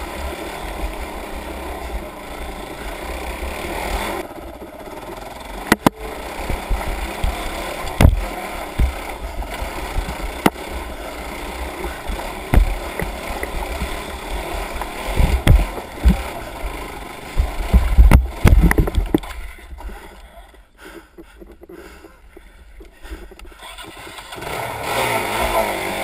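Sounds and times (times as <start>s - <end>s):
low rumbling: 0.0s - 23.7s
sharp knocks: 5.7s - 9.0s, 12.5s - 13.2s, 15.1s - 16.2s, 17.4s - 19.3s.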